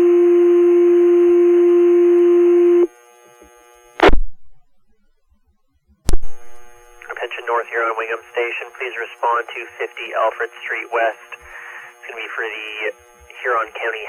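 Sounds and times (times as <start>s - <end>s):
sharp radio pops: 4.0s - 4.6s, 6.1s - 7.2s.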